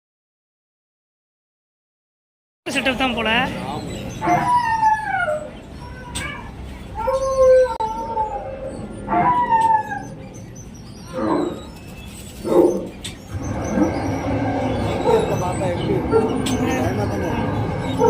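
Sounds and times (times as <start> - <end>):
animatronic animal cries: 3.8 - 11.8, 12.5 - 18.0.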